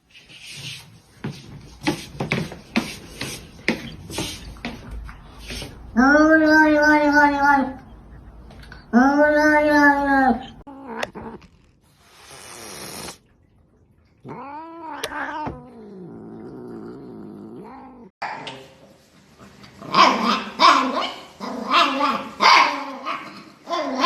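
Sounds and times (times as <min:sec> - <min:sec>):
cat growling low: 0:08.1 - 0:11.8, 0:14.2 - 0:18.1
cat hissing: 0:11.8 - 0:13.2.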